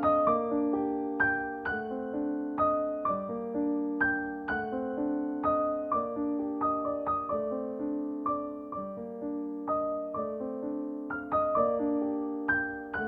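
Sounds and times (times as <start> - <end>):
gentle piano melody: 0.0 - 13.0.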